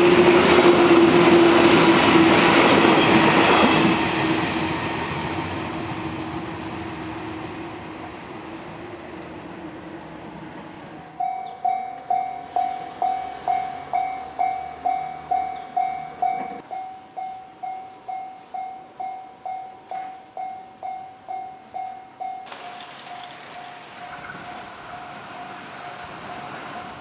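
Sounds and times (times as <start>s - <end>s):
level crossing warning bell: 11.2s - 27.0s.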